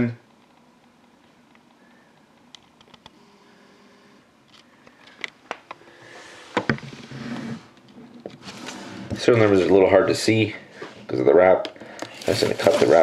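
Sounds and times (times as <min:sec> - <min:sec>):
plastic crinkle: 0:11.9 - 0:13.0.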